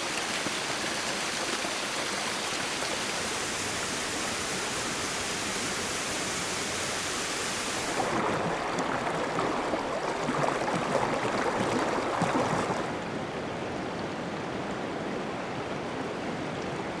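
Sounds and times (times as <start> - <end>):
water splashing and gurgling: 0.0 - 13.1
stream water rushing: 0.0 - 13.4.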